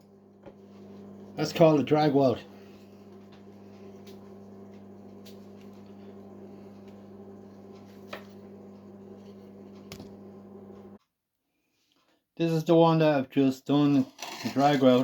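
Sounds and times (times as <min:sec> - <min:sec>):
welder transformer humming: 0:00.0 - 0:11.0.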